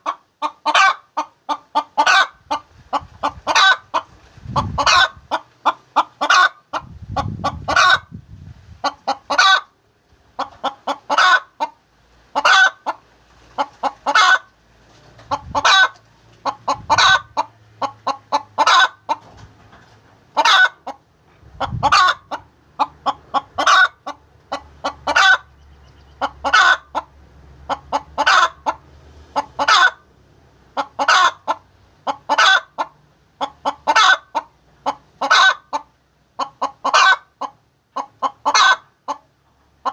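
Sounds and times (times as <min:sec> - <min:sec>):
hen cackling: 0:00.0 - 0:08.2, 0:08.8 - 0:09.8, 0:10.4 - 0:14.6, 0:15.2 - 0:19.3, 0:20.4 - 0:30.1, 0:30.7 - 0:39.9.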